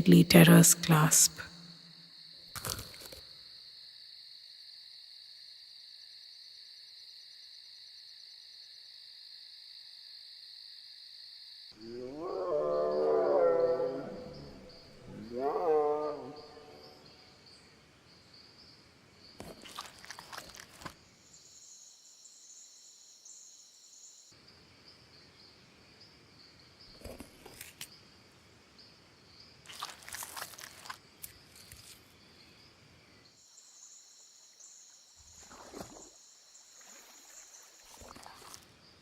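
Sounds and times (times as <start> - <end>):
insects trilling: 11.7 - 28.1.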